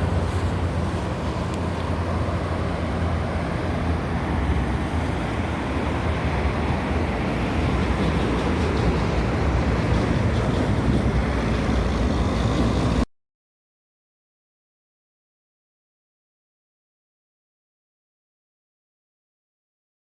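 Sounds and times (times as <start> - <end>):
road traffic rumble: 0.0 - 13.0
wind buffeting microphone: 0.0 - 13.0.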